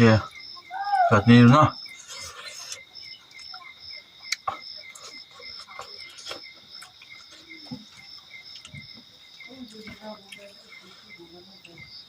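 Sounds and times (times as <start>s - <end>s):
insects chirping: 0.0s - 12.0s
person eating with clicks and smacks: 1.8s - 9.1s.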